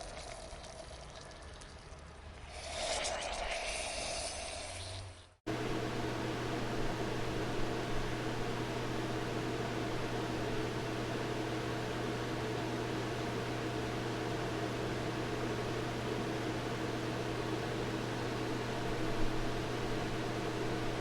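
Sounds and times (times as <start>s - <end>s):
machine humming and hissing: 5.5s - 21.0s.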